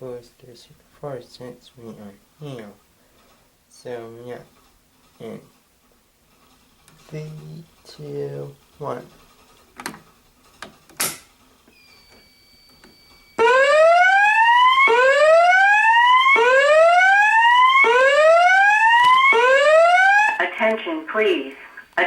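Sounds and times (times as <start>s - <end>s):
fire alarm whoop signal: 11.8s - 20.4s.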